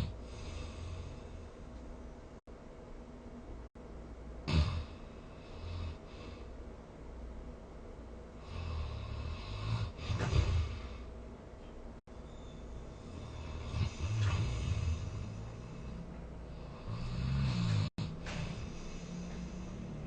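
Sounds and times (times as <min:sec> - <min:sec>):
person snoring: 0:00.0 - 0:01.5, 0:04.5 - 0:06.5, 0:08.4 - 0:11.1, 0:12.9 - 0:20.0.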